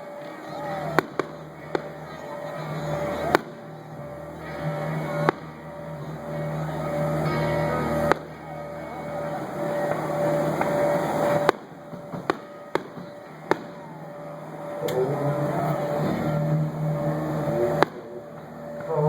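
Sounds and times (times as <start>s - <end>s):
steady low hum: 0.0s - 19.0s
fireworks bangs: 0.2s - 3.9s, 8.0s - 8.6s, 9.2s - 14.8s, 17.7s - 18.2s.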